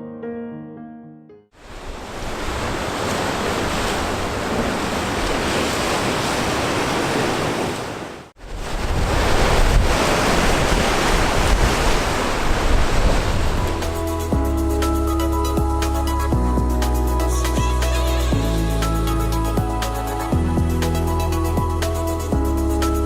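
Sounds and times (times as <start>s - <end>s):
rough sea breaking on rocks: 1.6s - 14.2s
wind buffeting microphone: 8.4s - 14.5s.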